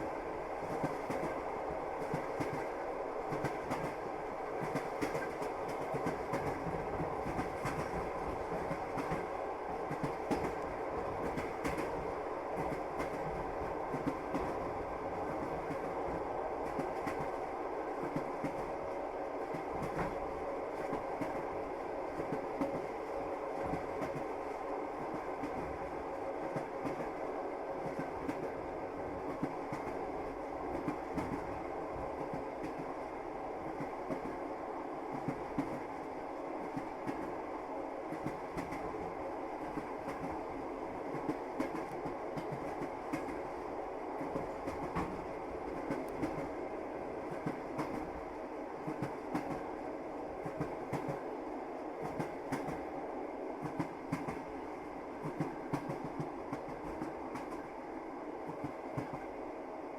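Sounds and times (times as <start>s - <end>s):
train rumble inside carriage: 0.0s - 59.9s
train wheels clacking over rails: 4.6s - 14.7s, 55.2s - 57.6s.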